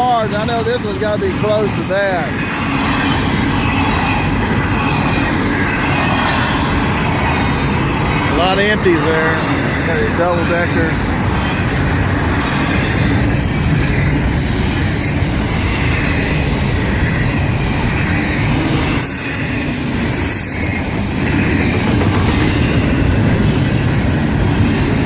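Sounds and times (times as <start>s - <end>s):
freight train wheels rumbling on rail: 0.0s - 25.0s.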